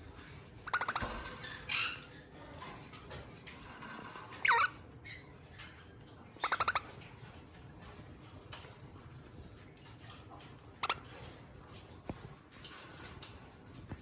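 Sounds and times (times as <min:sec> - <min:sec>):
parrot calling: 0:00.6 - 0:02.1, 0:04.4 - 0:05.3, 0:06.4 - 0:07.0, 0:10.8 - 0:11.1.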